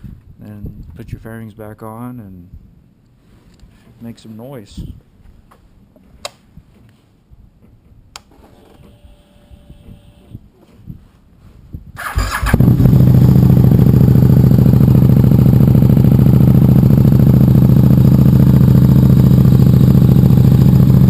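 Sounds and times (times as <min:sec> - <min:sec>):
motorcycle starter cranking: 0:12.0 - 0:13.0
motorcycle engine idling: 0:12.1 - 0:21.0.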